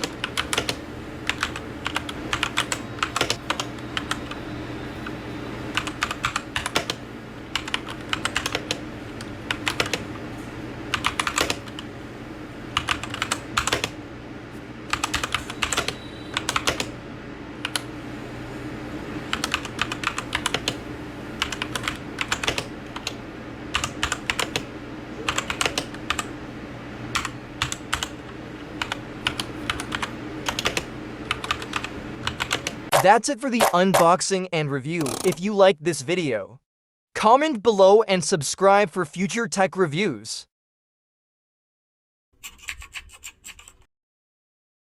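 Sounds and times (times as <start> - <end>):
mechanical keyboard typing: 0.0 - 4.4, 5.7 - 10.1, 10.9 - 11.9, 12.8 - 14.0, 14.9 - 16.9, 19.3 - 20.8, 21.4 - 24.7, 25.3 - 26.3, 27.1 - 28.1, 28.8 - 34.1, 42.4 - 43.9.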